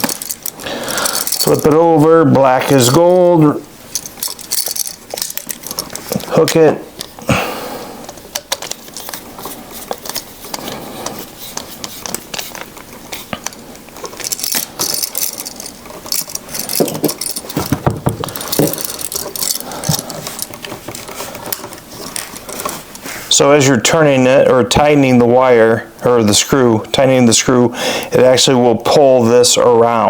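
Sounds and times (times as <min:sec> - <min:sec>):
small metal clicks and scrapes: 0:00.0 - 0:01.9, 0:03.9 - 0:07.1, 0:08.3 - 0:23.1.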